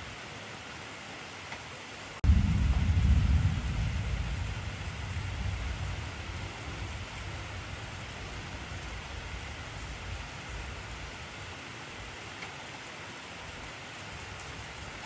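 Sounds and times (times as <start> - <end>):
heavy rain: 0.0 - 15.0
deep thunder rumble: 2.2 - 12.2.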